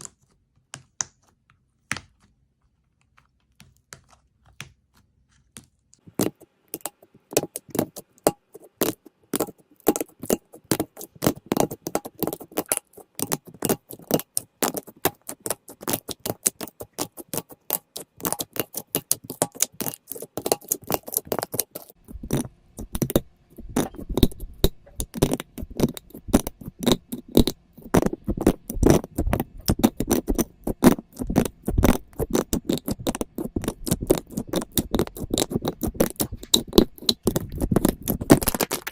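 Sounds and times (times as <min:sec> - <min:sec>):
slime squishing and popping: 0:06.1 - 0:38.9.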